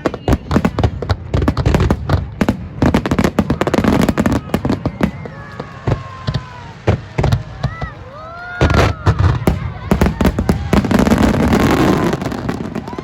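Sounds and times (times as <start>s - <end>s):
fireworks cracking and banging: 0.0s - 13.0s.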